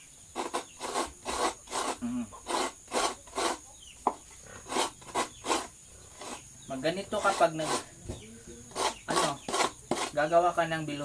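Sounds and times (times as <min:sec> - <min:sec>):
coconut rasping on grater blade: 0:00.3 - 0:03.6, 0:04.6 - 0:06.4, 0:07.1 - 0:07.9, 0:08.7 - 0:10.3.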